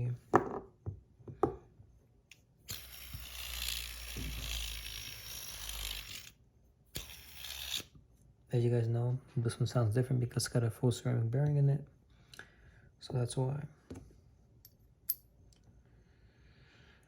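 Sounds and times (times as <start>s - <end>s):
fidget spinner whirring: 2.7s - 6.4s.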